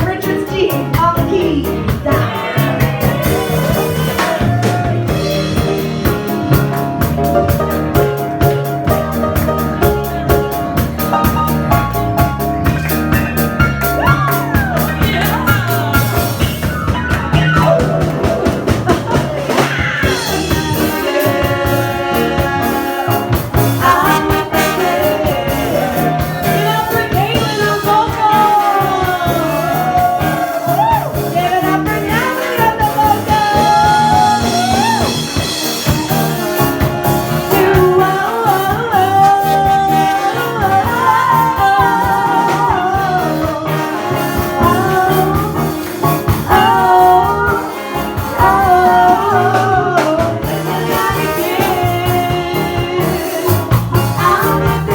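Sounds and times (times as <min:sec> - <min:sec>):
bass: 0:00.0 - 0:54.9
keyboards: 0:00.0 - 0:54.9
steady drum beat: 0:00.0 - 0:54.9
person singing lead melody: 0:12.7 - 0:35.9, 0:37.3 - 0:54.9.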